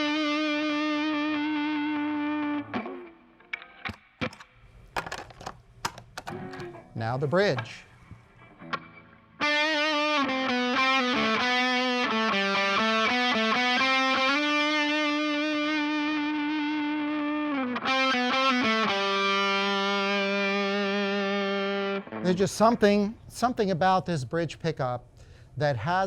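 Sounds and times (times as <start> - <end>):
electric guitar notes: 8.4 - 22.8.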